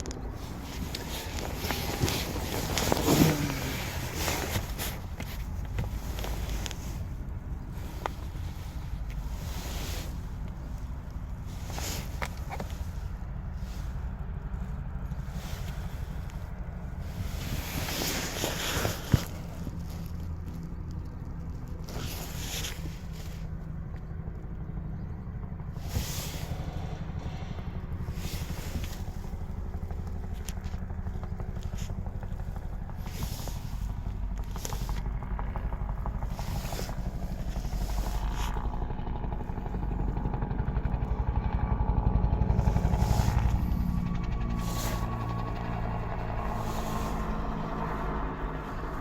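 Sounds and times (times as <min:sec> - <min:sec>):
brief rustling: 0:00.0 - 0:13.0
vehicle engine running: 0:00.0 - 0:49.0.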